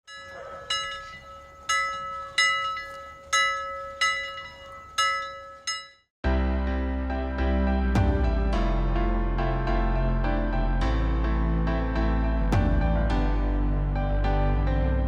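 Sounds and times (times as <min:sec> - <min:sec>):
bell ringing: 0:00.0 - 0:06.1.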